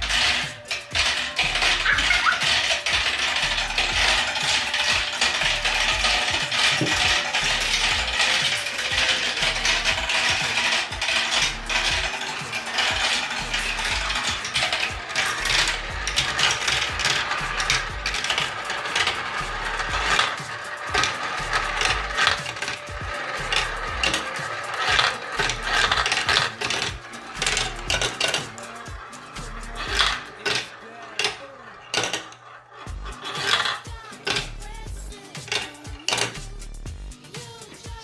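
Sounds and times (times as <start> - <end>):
marbles rattling through marble run: 0.0 - 36.8.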